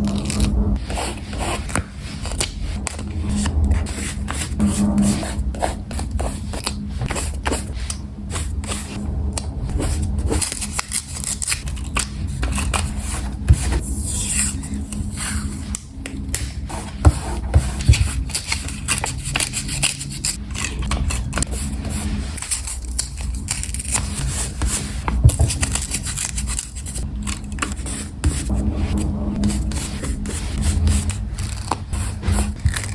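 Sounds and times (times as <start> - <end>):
steady low hum: 0.0 - 32.9
paper rustling and scraping: 9.7 - 15.8, 16.7 - 32.9.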